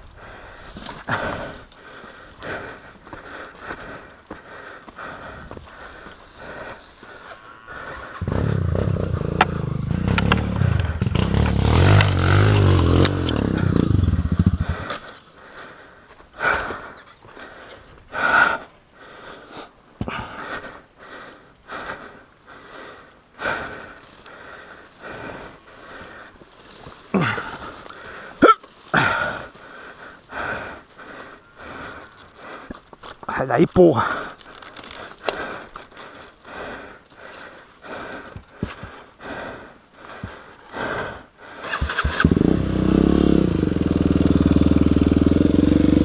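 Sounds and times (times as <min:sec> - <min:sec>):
person breathing heavily: 0:00.0 - 0:46.0
motorcycle engine revving: 0:08.1 - 0:15.3, 0:41.6 - 0:46.0.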